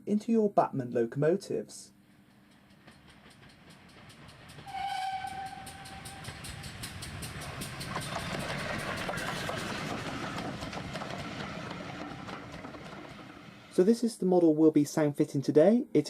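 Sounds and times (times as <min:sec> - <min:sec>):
locomotive exhaust chuffs: 0:02.5 - 0:13.8
steam locomotive whistle: 0:04.6 - 0:06.9.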